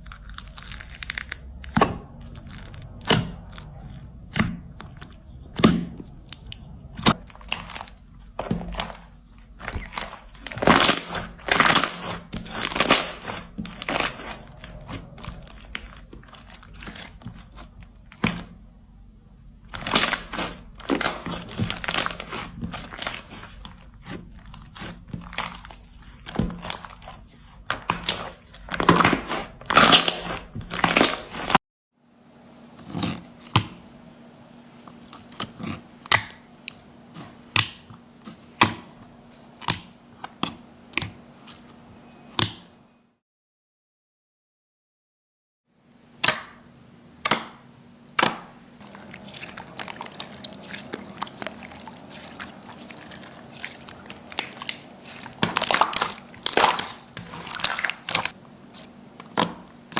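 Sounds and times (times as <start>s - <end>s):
slime crackling and popping: 0.0s - 18.6s, 19.7s - 31.6s, 48.9s - 58.4s.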